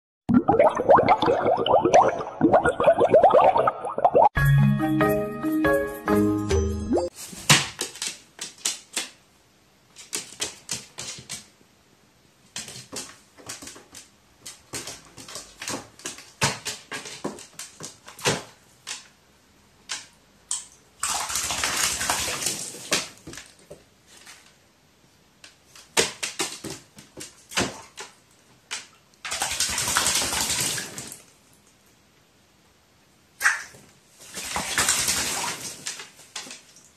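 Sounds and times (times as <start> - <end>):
bird splashing in water: 34.3 - 36.0.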